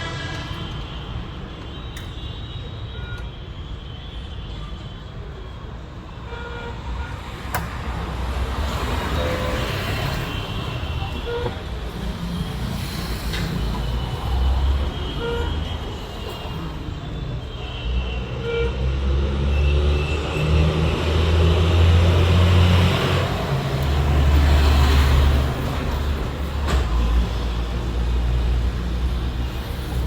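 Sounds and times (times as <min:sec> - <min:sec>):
road traffic rumbling: 0:06.0 - 0:30.0.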